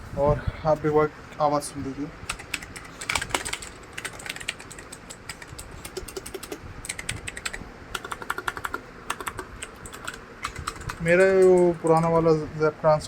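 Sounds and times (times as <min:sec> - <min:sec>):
mechanical keyboard typing: 0:02.3 - 0:12.3.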